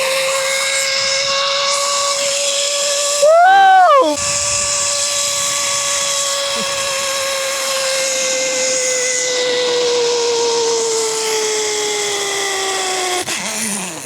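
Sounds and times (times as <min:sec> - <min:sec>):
zip line pulleys whining on cable: 0:00.0 - 0:14.0
rushing air: 0:03.7 - 0:07.2.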